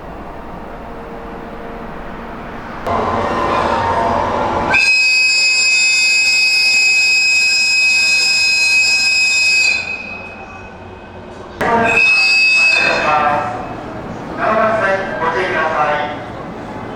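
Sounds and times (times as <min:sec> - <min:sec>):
electric locomotive rumbling: 0:00.0 - 0:16.9
high air whistle blast: 0:03.2 - 0:10.5, 0:11.7 - 0:13.2.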